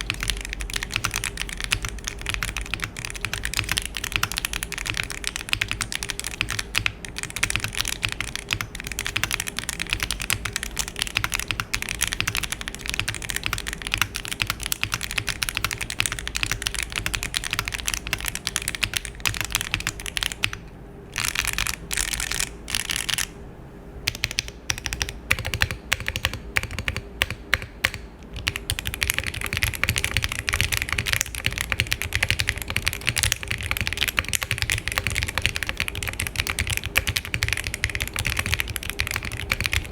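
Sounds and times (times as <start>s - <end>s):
mechanical keyboard typing: 0.0s - 20.6s, 21.2s - 23.3s, 24.1s - 39.9s.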